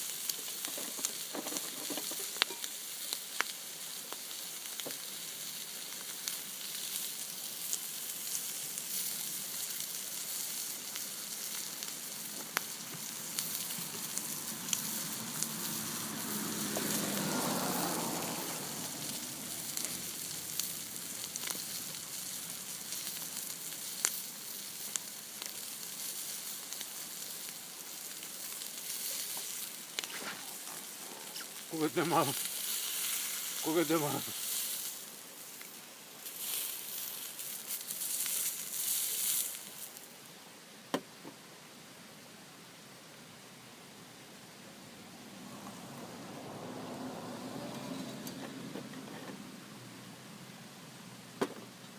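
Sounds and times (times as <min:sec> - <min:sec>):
food sizzling in a pan: 0:00.0 - 0:40.3.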